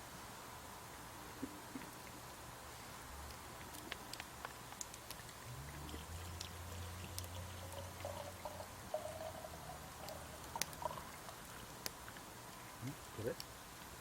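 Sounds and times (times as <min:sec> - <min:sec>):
wood fire crackling: 0:00.0 - 0:14.0
liquid pouring: 0:03.6 - 0:13.2.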